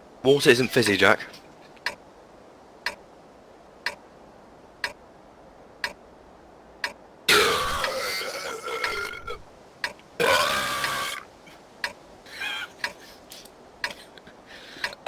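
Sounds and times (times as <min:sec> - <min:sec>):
man burping loudly: 0:07.3 - 0:09.4, 0:10.2 - 0:11.2.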